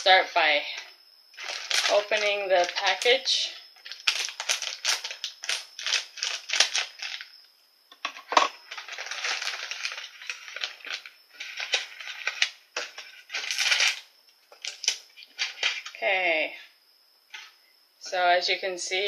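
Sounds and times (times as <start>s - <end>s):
plastic packaging crackling: 1.4s - 7.4s, 8.0s - 16.0s.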